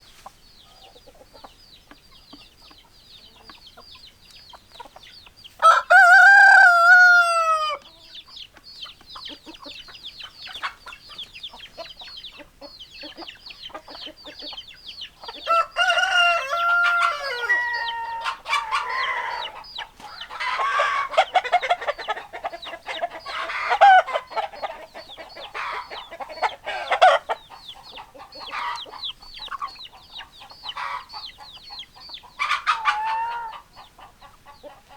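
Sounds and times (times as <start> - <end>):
hens clucking and squawking: 0.1 - 34.9
rooster crowing: 5.6 - 7.8, 15.4 - 19.6, 26.6 - 27.2.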